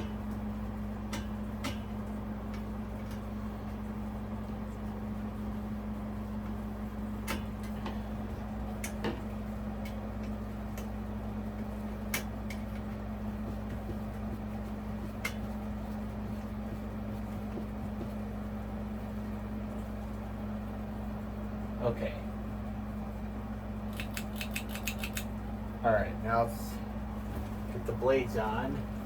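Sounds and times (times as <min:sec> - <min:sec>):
low electrical hum: 0:00.0 - 0:29.0
small parts clicking and tapping: 0:23.9 - 0:25.3.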